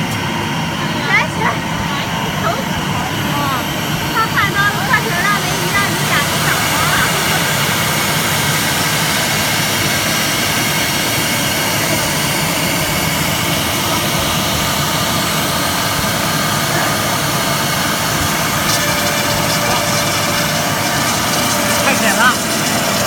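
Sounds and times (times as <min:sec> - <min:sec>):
wood router machine whine: 0:00.0 - 0:23.0.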